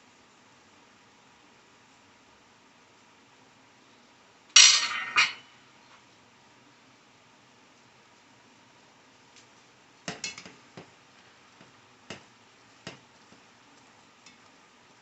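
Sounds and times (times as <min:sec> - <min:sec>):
metal cookware clinking: 0:04.6 - 0:05.4, 0:10.1 - 0:10.6.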